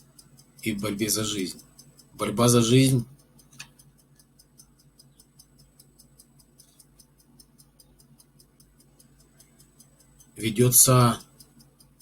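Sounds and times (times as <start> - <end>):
faint even ticking: 0.0 - 12.0
low steady hum: 0.0 - 12.0.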